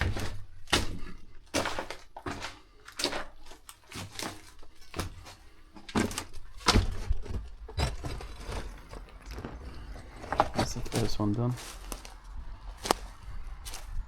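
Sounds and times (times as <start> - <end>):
footsteps crunching over rubble: 0.0 - 14.0.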